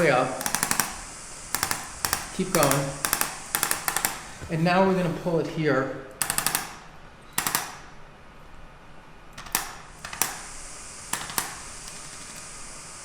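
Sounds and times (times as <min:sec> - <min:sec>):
rapid clicking taps: 0:00.0 - 0:04.6, 0:06.2 - 0:07.9, 0:09.3 - 0:12.5.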